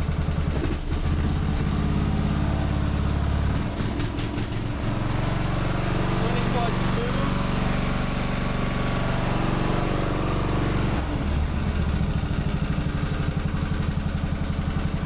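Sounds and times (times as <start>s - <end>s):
lawn tractor engine running: 0.0s - 15.0s.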